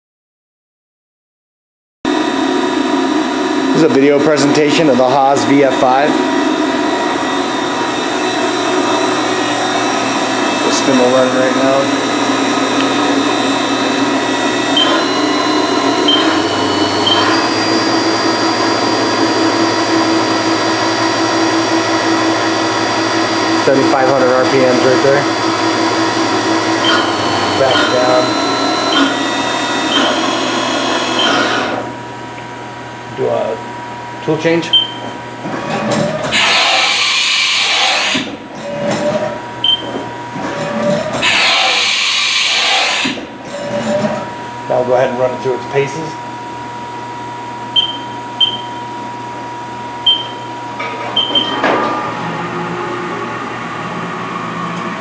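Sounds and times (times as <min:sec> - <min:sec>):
mill spindle whine: 0:02.1 - 0:55.0
mechanical clunking and whirring: 0:12.2 - 0:32.5, 0:34.7 - 0:44.5, 0:50.0 - 0:53.0
short high beep: 0:16.1 - 0:16.4, 0:47.8 - 0:48.8, 0:50.0 - 0:50.4.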